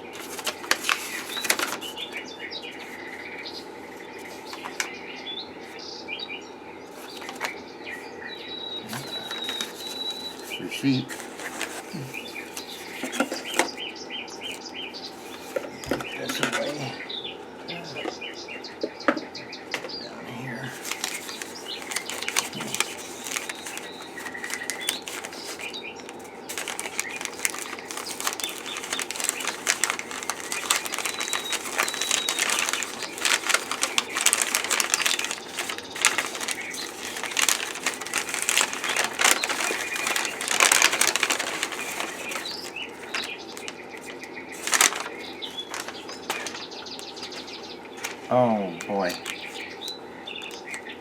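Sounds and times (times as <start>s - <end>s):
packing material crinkling: 0.0s - 3.0s, 4.2s - 4.9s, 7.0s - 7.6s, 8.7s - 14.6s, 20.7s - 50.9s.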